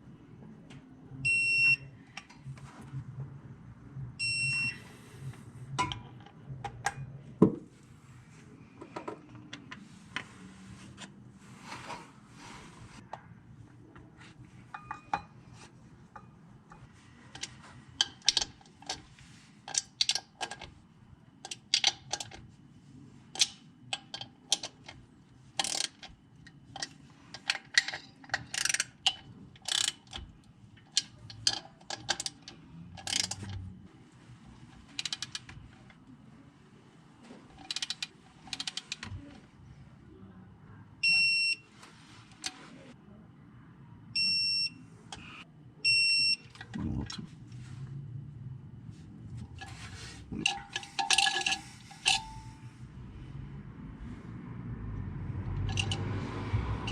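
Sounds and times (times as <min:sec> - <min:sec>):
socket ratchet clicking: 0:25.6 - 0:26.1, 0:26.8 - 0:30.2.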